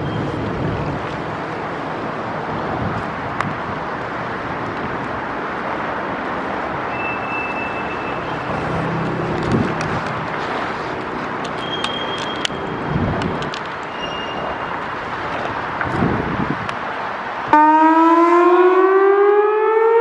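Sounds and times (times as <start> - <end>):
city traffic noise: 0.0 - 20.0.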